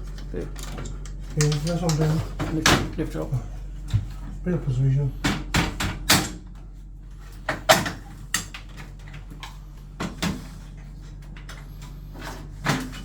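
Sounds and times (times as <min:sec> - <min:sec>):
steady low hum: 0:00.0 - 0:13.0
knocks and clicks of parts: 0:05.2 - 0:06.5.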